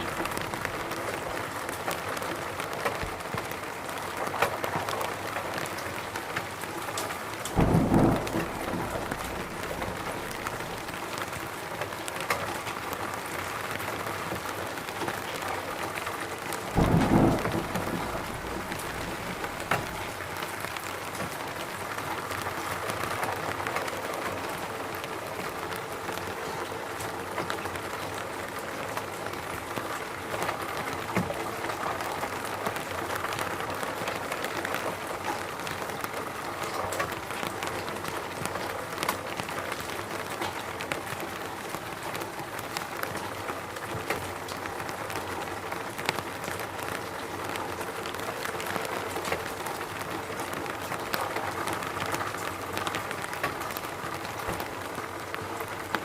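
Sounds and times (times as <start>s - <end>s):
steady rain in a forest: 0.0s - 56.0s.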